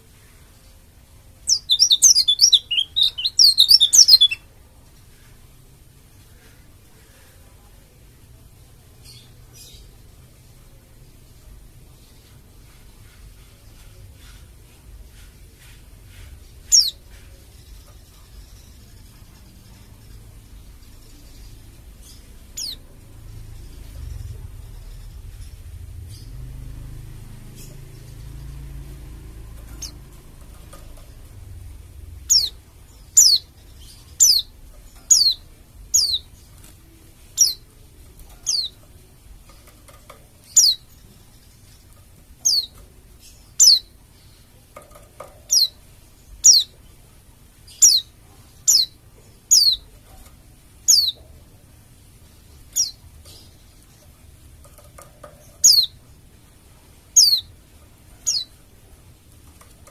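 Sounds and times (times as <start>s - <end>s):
small bird calling high notes: 1.5s - 4.4s.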